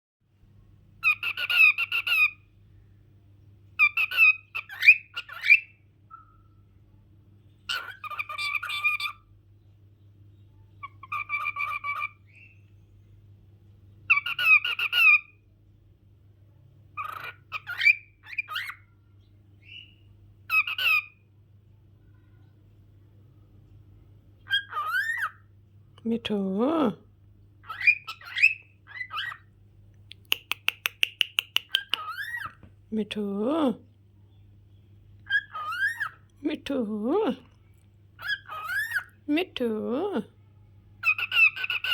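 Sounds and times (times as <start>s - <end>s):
parrot calling and chattering: 1.0s - 2.5s, 3.8s - 6.4s, 7.6s - 9.3s, 10.8s - 12.6s, 14.1s - 15.4s, 17.0s - 18.9s, 19.6s - 21.3s, 24.4s - 25.5s, 27.6s - 29.5s, 30.1s - 33.8s, 35.2s - 37.5s, 38.2s - 40.3s, 41.0s - 41.9s.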